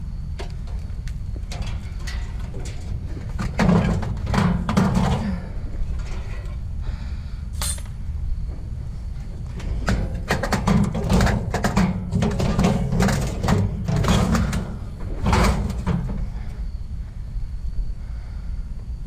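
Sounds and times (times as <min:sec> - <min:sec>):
steady low rumble: 0:00.0 - 0:19.0
scrap metal clinking and clattering: 0:07.6 - 0:07.9, 0:09.6 - 0:16.2.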